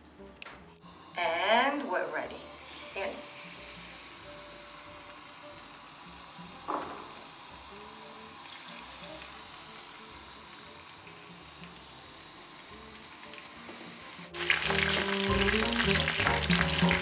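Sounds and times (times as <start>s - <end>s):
batter frying in oil: 2.4s - 17.0s
brief knock: 6.7s - 7.1s.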